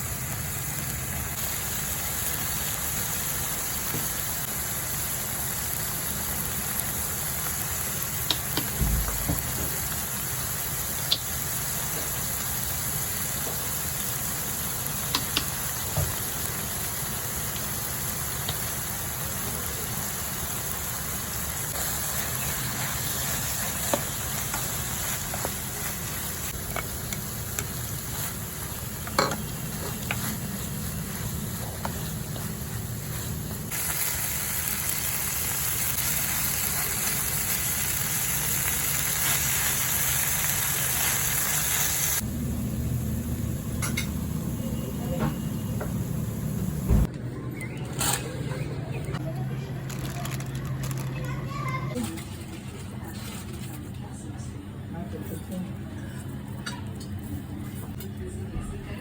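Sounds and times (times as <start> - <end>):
food sizzling in a frying pan: 0.0 - 47.1.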